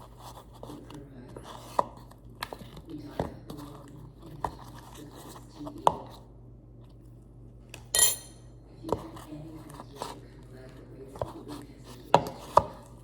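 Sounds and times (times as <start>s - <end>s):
bright ringing clink: 7.9s - 8.6s.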